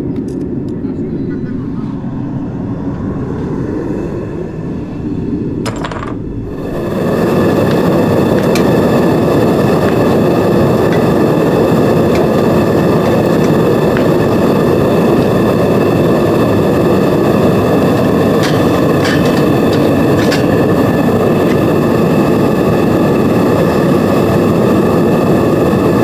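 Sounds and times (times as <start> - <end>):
furnace burner rushing: 6.3 - 26.0.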